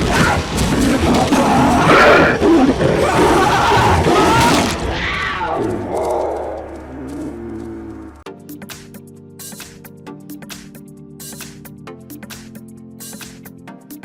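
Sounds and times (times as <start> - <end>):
mountain lion cries and snarls: 0.0 - 8.2
film score music: 0.0 - 13.5.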